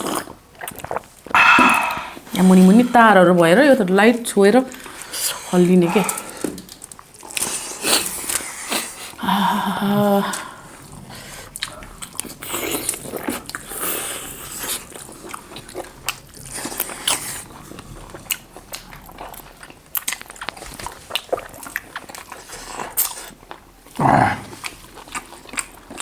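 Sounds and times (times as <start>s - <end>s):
biting and chewing: 0.0s - 2.6s, 4.7s - 9.2s, 10.8s - 26.0s
wet mouth clicks: 0.6s - 2.3s
short vocal sound: 1.4s - 2.2s.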